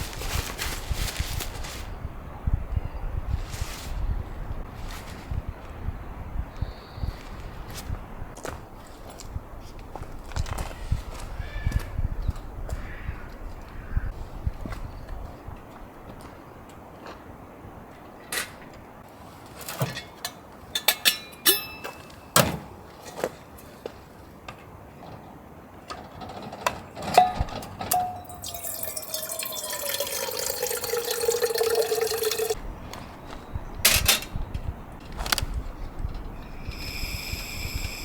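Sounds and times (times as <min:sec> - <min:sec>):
liquid pouring: 0:28.0 - 0:32.6.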